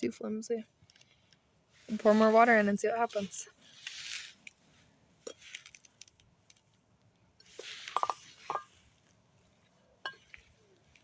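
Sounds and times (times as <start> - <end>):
light taps of cup and container: 7.6 - 9.1.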